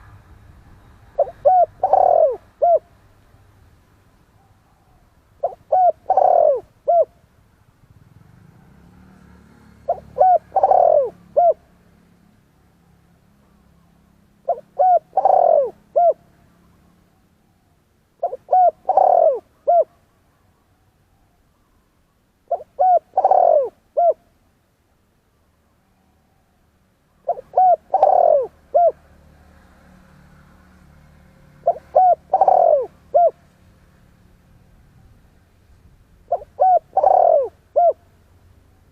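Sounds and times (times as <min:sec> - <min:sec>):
dove cooing: 0:01.2 - 0:02.9, 0:04.4 - 0:07.2, 0:09.7 - 0:11.7, 0:14.4 - 0:16.4, 0:18.2 - 0:20.0, 0:22.5 - 0:24.3, 0:27.2 - 0:29.1, 0:31.6 - 0:33.4, 0:36.3 - 0:38.1.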